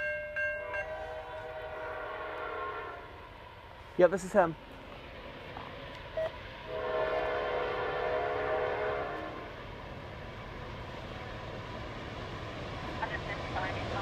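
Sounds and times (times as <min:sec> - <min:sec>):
train rumbling: 0:00.0 - 0:14.0
locomotive air horn chord: 0:00.6 - 0:03.2, 0:06.7 - 0:09.5.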